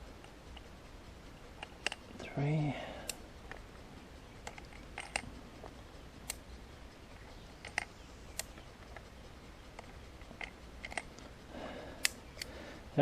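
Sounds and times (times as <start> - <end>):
faint sharp metallic clicks: 12.0 - 12.6.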